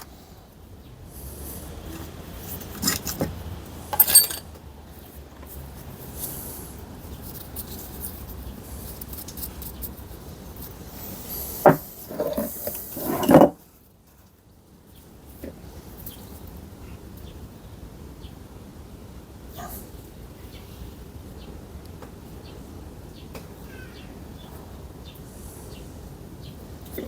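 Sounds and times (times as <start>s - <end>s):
metal tools clinking: 2.6s - 3.3s, 3.9s - 4.5s
scraping on workbench: 11.6s - 13.6s.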